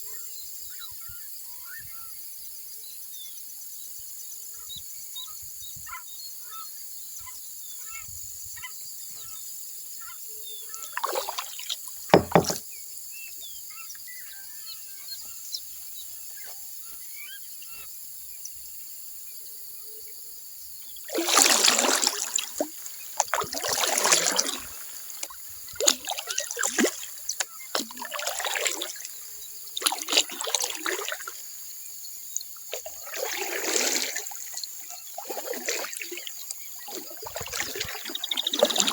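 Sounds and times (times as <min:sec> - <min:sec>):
kayak paddle strokes in water: 0:11.0 - 0:12.6, 0:21.1 - 0:31.4, 0:32.7 - 0:38.9.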